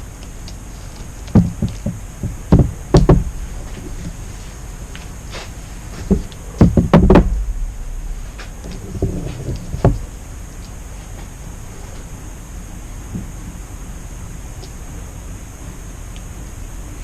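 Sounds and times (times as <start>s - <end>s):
hard objects knocking on a surface: 1.4s - 4.1s, 6.1s - 10.0s.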